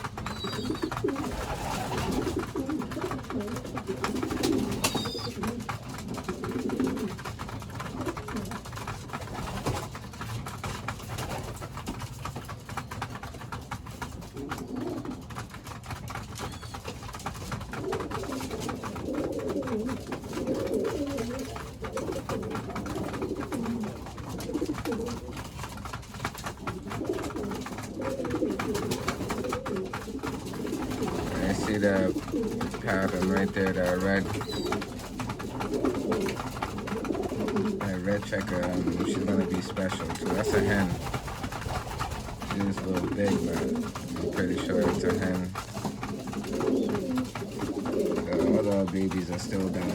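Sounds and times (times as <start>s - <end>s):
pigeons cooing: 0.0s - 49.9s.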